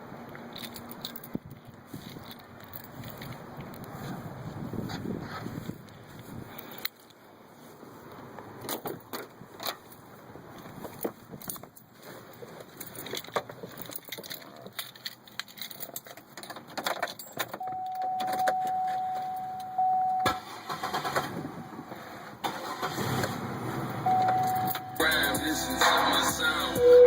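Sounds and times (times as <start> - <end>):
car keys jingling: 0.4 - 4.0, 10.6 - 23.0, 23.8 - 27.0
car engine cranking: 12.4 - 27.0
electronic warning chime: 17.6 - 20.5, 24.0 - 25.4, 26.7 - 27.0.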